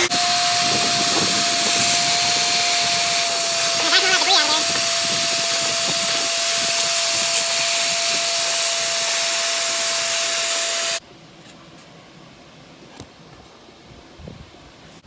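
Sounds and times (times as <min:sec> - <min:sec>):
vacuum cleaner sucking water: 0:00.0 - 0:11.0.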